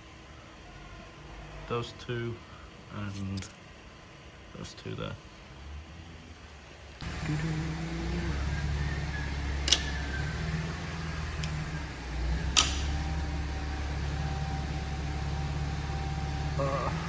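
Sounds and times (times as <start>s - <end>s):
low mechanical hum: 0.0s - 17.0s
sharp metallic clicks: 7.0s - 14.8s.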